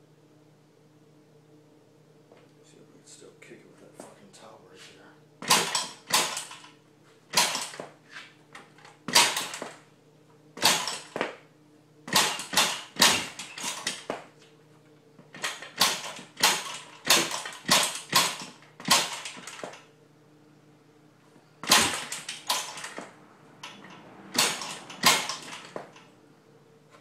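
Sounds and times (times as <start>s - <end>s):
kick-start clacks: 15.4s - 19.8s, 21.6s - 26.1s.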